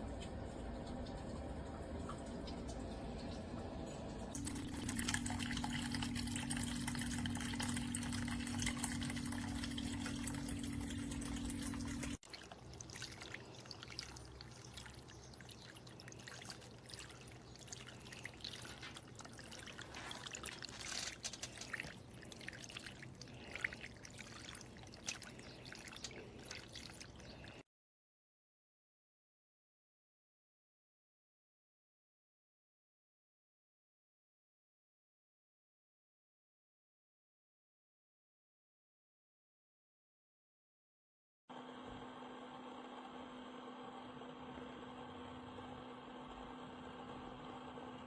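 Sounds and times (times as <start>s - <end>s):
steady low hum: 0.0s - 12.2s
water trickling in fountain: 0.0s - 27.6s.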